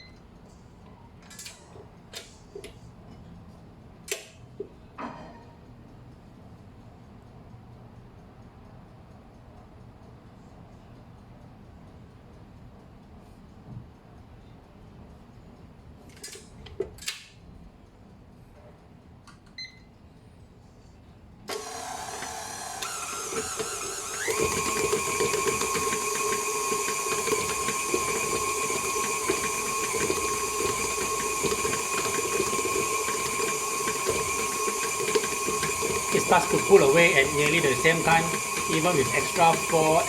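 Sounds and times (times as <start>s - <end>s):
stand mixer motor humming: 21.5s - 40.0s.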